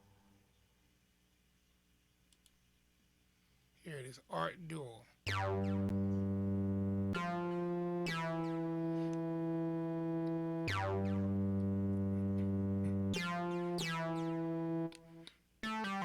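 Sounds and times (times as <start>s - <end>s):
bright buzzy synthesizer notes: 5.3s - 16.0s.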